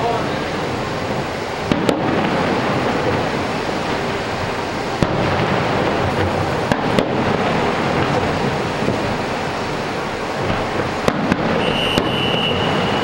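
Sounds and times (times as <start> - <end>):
distant fireworks rumble: 0.0 - 13.0
sharp firework bangs: 0.2 - 13.0.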